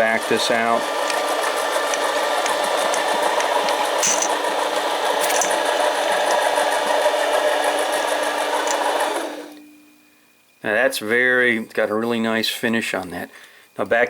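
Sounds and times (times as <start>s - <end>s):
lathe running: 0.0s - 9.6s.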